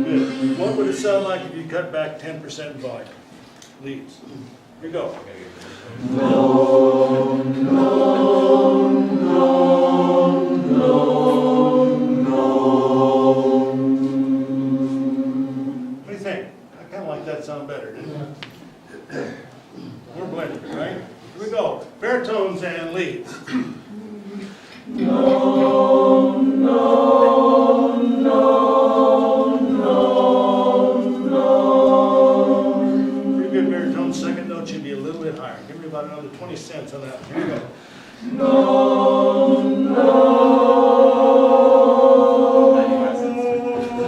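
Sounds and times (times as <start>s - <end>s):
vocal chorus singing held notes: 0.0s - 1.7s, 5.5s - 16.2s, 23.4s - 35.3s, 37.3s - 44.0s.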